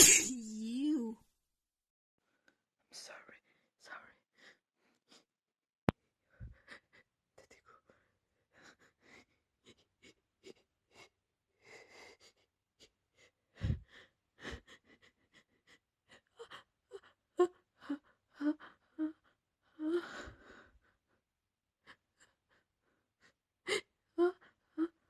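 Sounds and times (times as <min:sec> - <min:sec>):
woman sneezing: 0:00.0 - 0:00.8.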